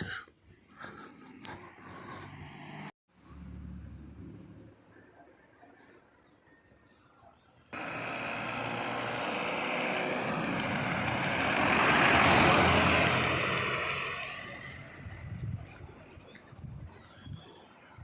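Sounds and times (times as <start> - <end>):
vehicle passing on highway: 1.3 - 4.9, 7.8 - 16.1.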